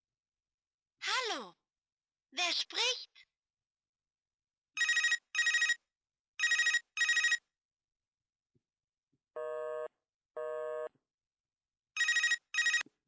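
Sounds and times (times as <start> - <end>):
toy telephone electronic ring: 4.8 - 5.8, 6.4 - 7.4, 12.0 - 12.9.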